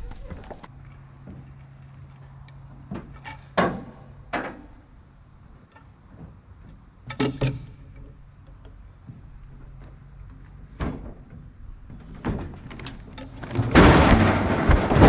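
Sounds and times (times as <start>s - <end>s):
metal and wood clanks: 5.6s - 8.8s, 10.7s - 15.0s.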